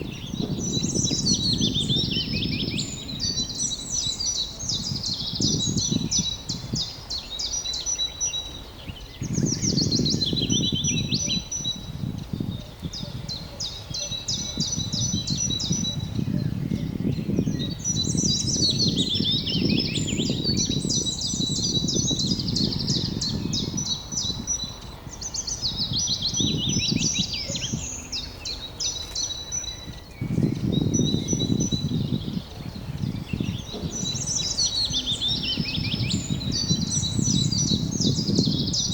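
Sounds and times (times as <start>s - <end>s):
songbirds chirping and trilling: 0.0s - 38.9s
low rushing noise: 33.4s - 36.5s.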